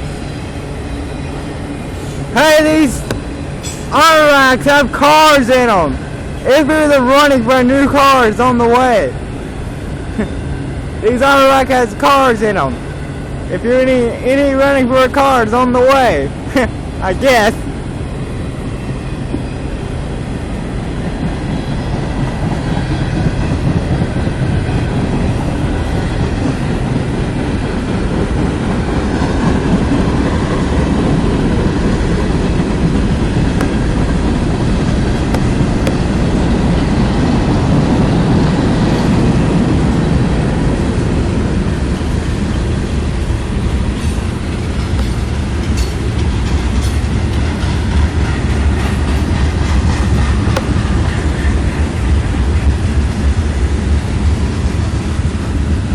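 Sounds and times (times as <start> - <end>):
train wheels rumbling on rails: 0.0 - 55.9
clickety-clack of train wheels: 2.0 - 4.0, 20.5 - 55.9.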